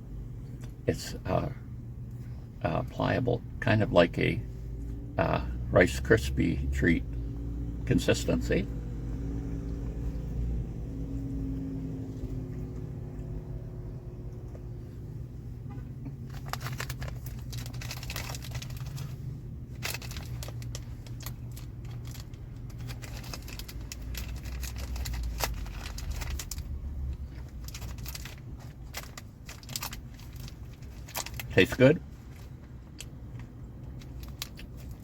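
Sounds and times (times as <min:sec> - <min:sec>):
steady low hum: 0:00.0 - 0:35.0
person chewing granola bar: 0:32.3 - 0:35.0.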